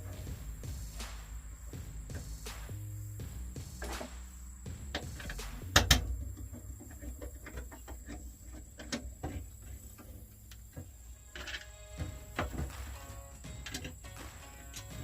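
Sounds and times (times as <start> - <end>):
low steady hum: 0.0 - 15.0
hands and tools clicking: 3.8 - 15.0.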